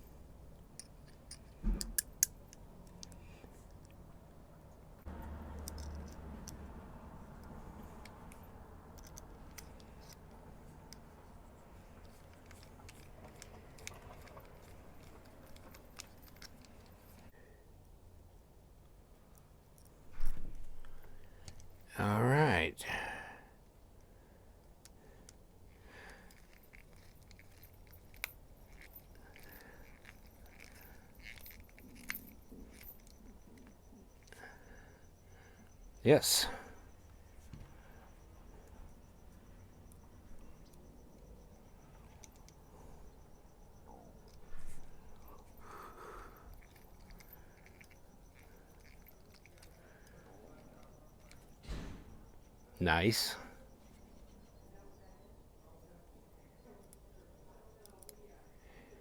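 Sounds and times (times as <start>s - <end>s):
faint low room hum: 0.0s - 59.0s
small clicks of metal knife parts: 0.7s - 4.0s, 5.6s - 6.6s, 7.4s - 11.1s, 44.2s - 52.1s, 56.8s - 58.6s.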